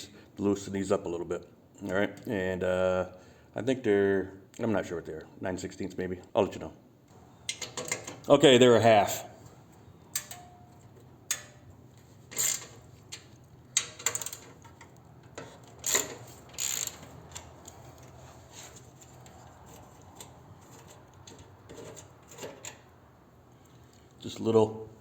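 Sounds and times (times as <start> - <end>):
ratchet wrench clicking: 12.3 - 18.1.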